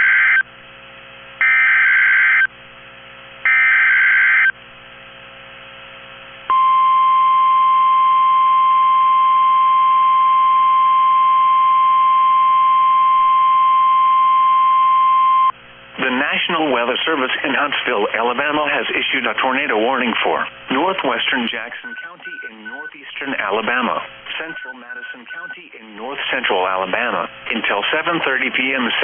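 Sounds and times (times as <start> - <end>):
steady alarm tone: 0.0 - 0.4, 1.4 - 2.5, 3.4 - 4.6, 6.5 - 15.5.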